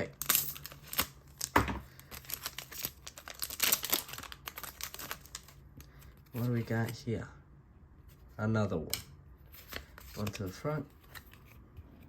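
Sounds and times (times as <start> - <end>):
foil pack tearing and crinkling: 0.2 - 5.6.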